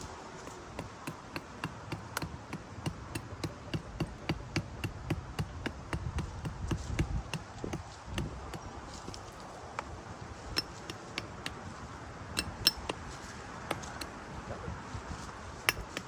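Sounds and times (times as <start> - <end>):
hatchet chopping wooden stick: 0.4 - 9.9, 10.5 - 11.6, 12.4 - 14.2, 15.7 - 16.0.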